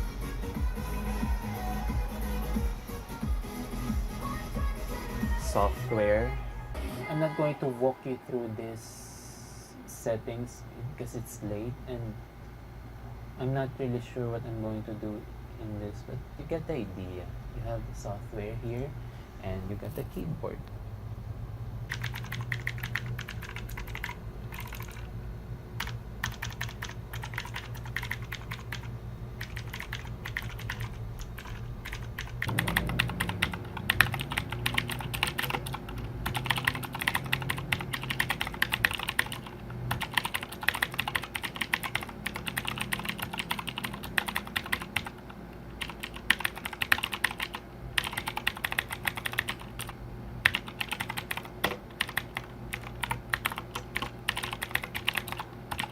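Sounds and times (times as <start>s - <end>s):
mechanical keyboard typing: 21.9s - 25.1s, 25.8s - 55.9s.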